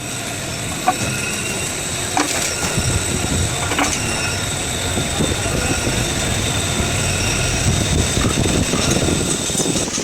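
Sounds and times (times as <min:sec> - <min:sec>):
truck engine rumbling: 0:00.0 - 0:10.0
clunks and rattles: 0:00.7 - 0:05.9.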